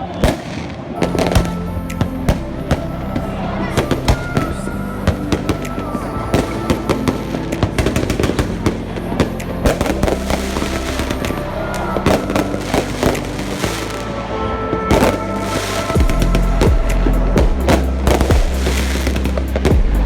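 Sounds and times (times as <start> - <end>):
background music with held tones: 0.0 - 20.0
fireworks exploding: 7.4 - 14.2.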